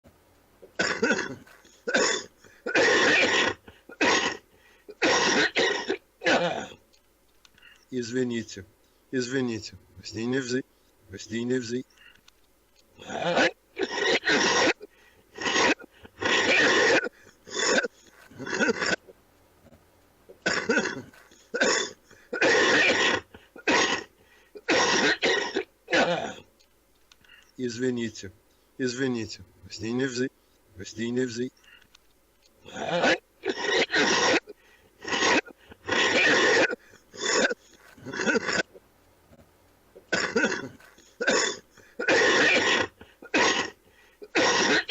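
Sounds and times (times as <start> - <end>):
man coughing hard: 0.8 - 6.8, 13.0 - 19.0, 20.4 - 26.5, 32.7 - 38.6, 40.1 - 44.9.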